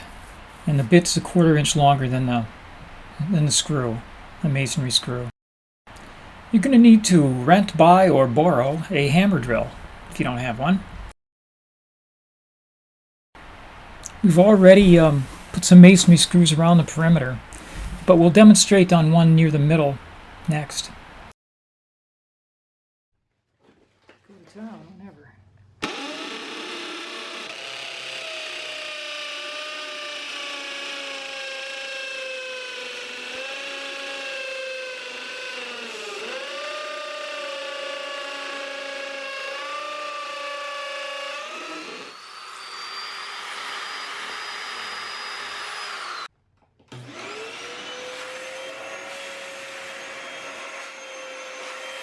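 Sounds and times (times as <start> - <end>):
hammer drill boring into concrete: 25.8 - 46.3.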